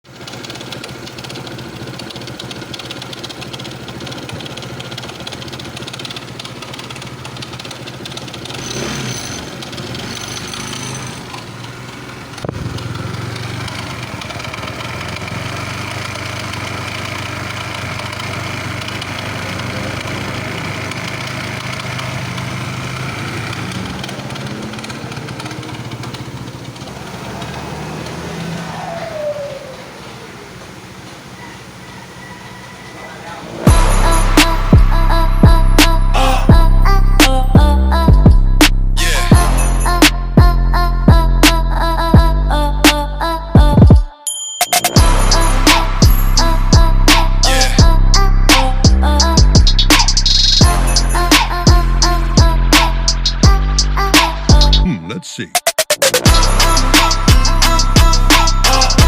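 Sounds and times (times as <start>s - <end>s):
scooter engine running: 0.0s - 42.5s, 44.9s - 55.0s, 55.9s - 59.0s
sharp click: 49.9s - 50.6s.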